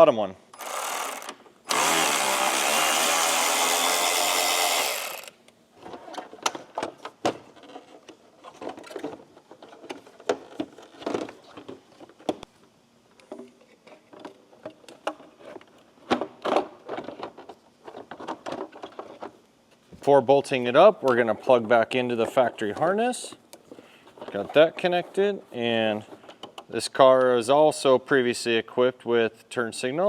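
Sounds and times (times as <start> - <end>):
power driver spinning a screw: 0.6 - 5.4.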